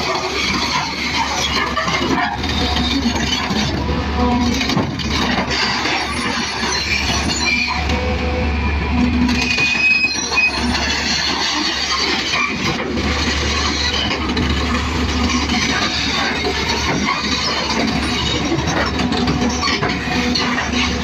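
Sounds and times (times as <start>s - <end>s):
diesel engine running: 0.0s - 21.0s
steel tracks clanking: 0.0s - 21.0s
high metallic squeals: 0.2s - 21.0s.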